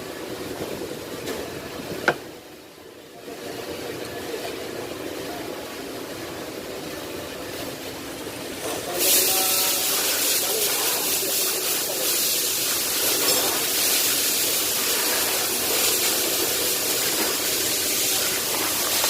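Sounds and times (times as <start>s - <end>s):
hiss of air jet: 8.9s - 19.0s.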